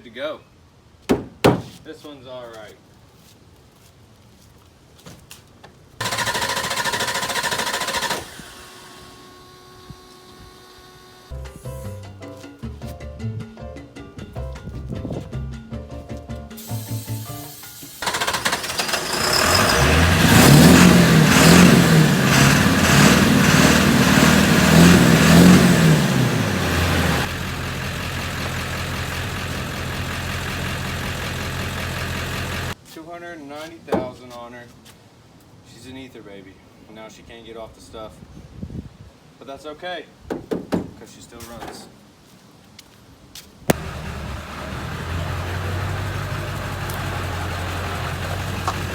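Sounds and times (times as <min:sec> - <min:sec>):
diesel engine starting: 0:06.0 - 0:11.8, 0:16.6 - 0:32.8, 0:43.7 - 0:48.9.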